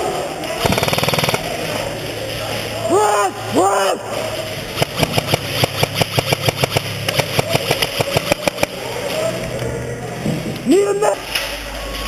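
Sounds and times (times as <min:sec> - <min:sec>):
airsoft guns firing full auto: 0:00.6 - 0:01.6, 0:04.8 - 0:08.8.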